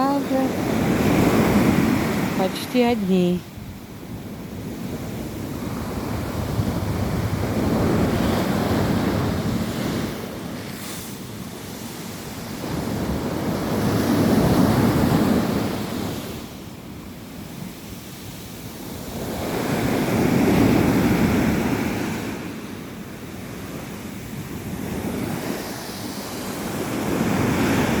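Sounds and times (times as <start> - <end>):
wind on microphone: 0.0 - 22.8
rough surf breaking on shore: 0.0 - 28.0.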